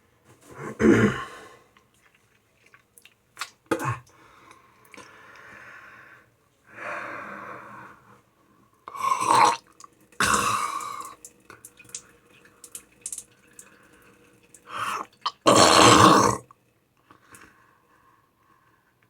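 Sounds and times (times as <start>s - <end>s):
person making gurgling burp noises: 0.7s - 1.3s, 3.7s - 4.0s, 8.9s - 11.2s, 14.7s - 16.5s.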